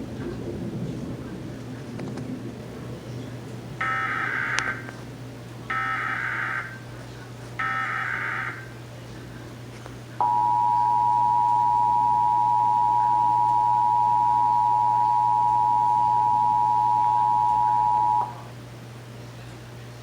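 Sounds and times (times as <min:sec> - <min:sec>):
two-tone alert signal: 0:03.8 - 0:04.9, 0:10.2 - 0:18.4.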